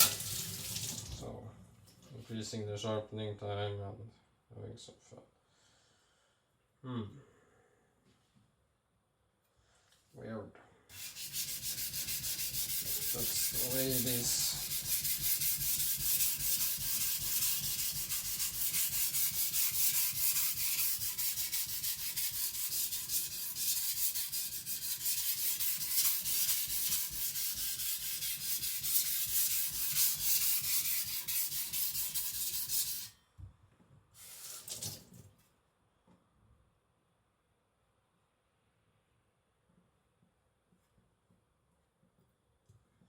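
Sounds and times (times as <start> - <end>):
cleaver scraping on whetstone: 10.9 - 33.1.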